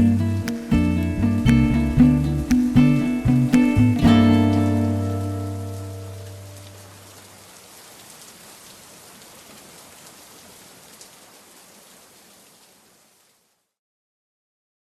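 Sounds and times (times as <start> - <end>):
ukulele and bass notes: 0.0 - 7.1
steady falling rain: 0.0 - 13.8.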